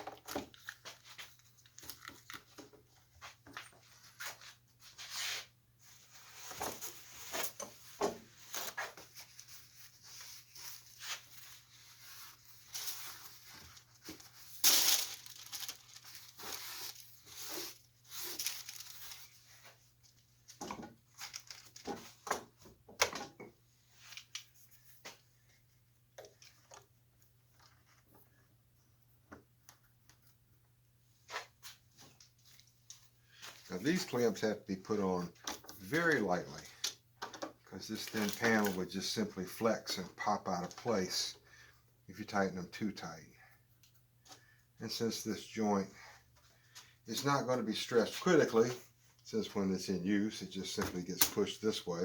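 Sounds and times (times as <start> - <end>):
paper rustling and crinkling: 8.4 - 19.7, 21.1 - 22.2, 38.0 - 38.9.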